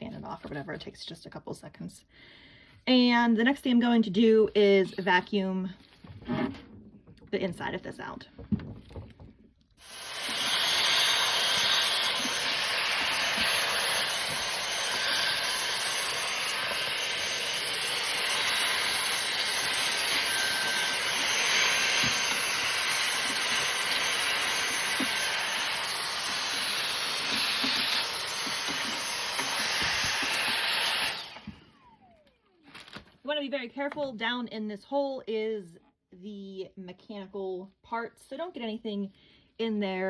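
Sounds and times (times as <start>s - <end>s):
vacuum cleaner running: 9.8s - 32.2s.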